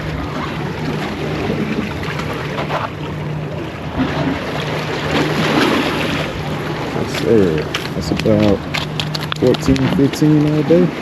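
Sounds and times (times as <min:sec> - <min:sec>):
low hum: 0:00.0 - 0:11.0
sea water washing: 0:00.0 - 0:11.0
wind buffeting microphone: 0:00.0 - 0:11.0.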